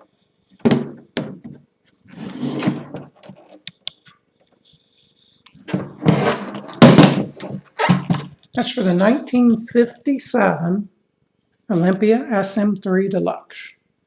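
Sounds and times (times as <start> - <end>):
case scraping: 2.1 - 3.5, 5.6 - 9.2
case thumps and knocks: 5.7 - 8.3.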